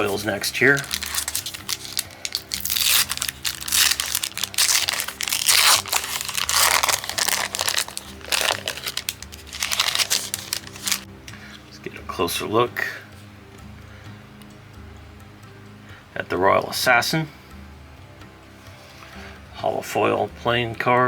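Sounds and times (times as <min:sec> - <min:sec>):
plastic wrapper crinkling and tearing: 0:00.0 - 0:11.1
quiet background music: 0:00.0 - 0:21.0.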